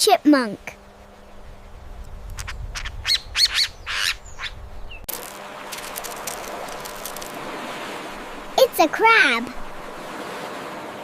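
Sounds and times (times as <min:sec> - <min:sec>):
low outdoor rumble: 0:00.6 - 0:10.2
chipmunk chirping: 0:02.4 - 0:05.0.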